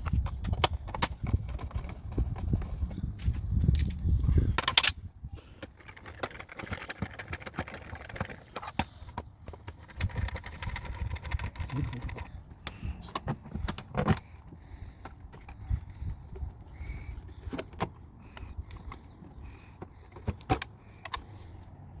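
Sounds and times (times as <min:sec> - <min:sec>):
tools and metal parts clicking: 0:03.7 - 0:05.1.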